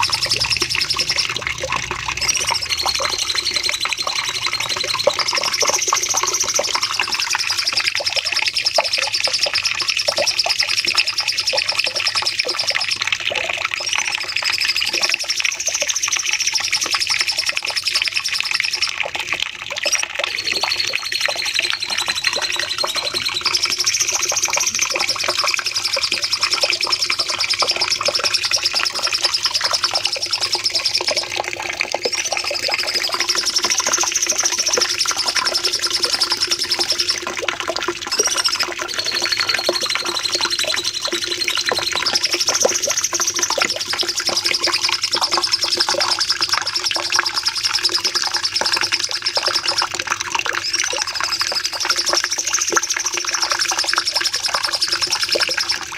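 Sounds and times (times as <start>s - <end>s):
bird chattering trills: 0.0s - 7.5s, 38.1s - 45.0s.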